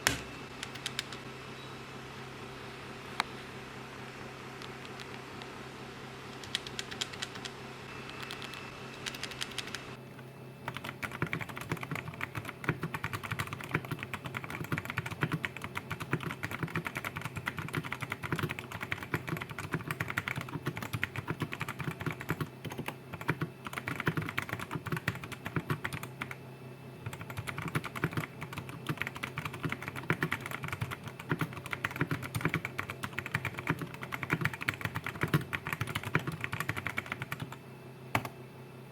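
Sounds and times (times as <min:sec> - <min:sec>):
low steady hum: 0:00.0 - 0:38.9
mechanical keyboard typing: 0:00.6 - 0:01.2, 0:06.3 - 0:10.0, 0:10.7 - 0:26.4, 0:27.0 - 0:37.6.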